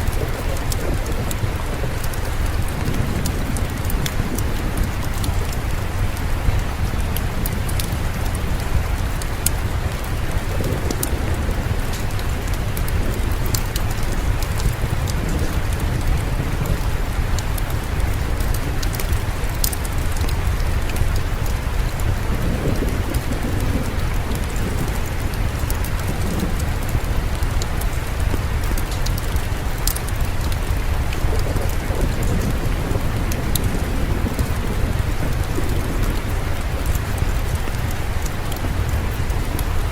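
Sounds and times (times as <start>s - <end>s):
sharp clicks and ticks: 0.0s - 39.9s
steady rain falling: 0.0s - 39.9s.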